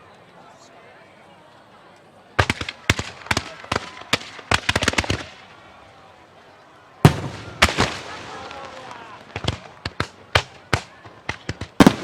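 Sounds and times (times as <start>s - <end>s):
fireworks cracking: 2.4s - 5.8s, 7.0s - 12.0s
fireworks boom: 7.1s - 12.0s.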